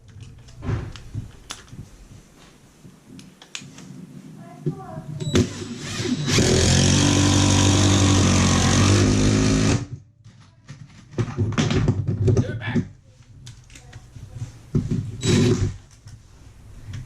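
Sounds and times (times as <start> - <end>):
power driver driving screw: 5.2 - 9.9, 15.2 - 15.8
tools and screws clattering: 10.2 - 12.5.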